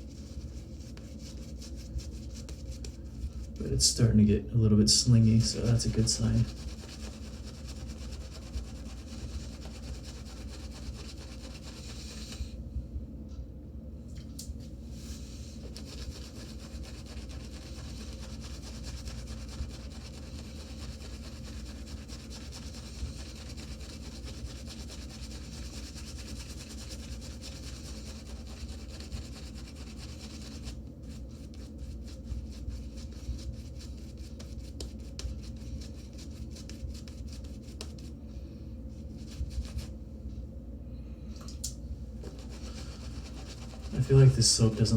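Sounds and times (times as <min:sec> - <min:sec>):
shaving brush swishing lather: 0:05.1 - 0:12.4, 0:15.6 - 0:38.1, 0:42.2 - 0:44.9.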